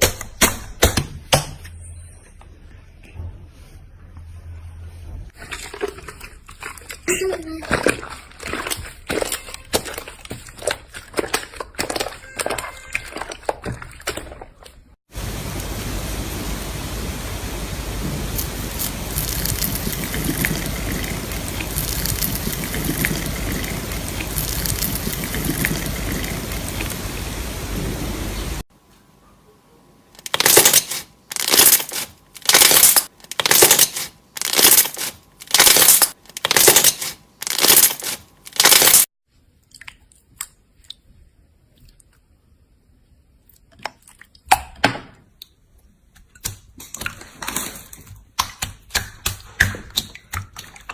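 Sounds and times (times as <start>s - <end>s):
slime squishing: 5.3s - 14.9s, 18.4s - 26.9s.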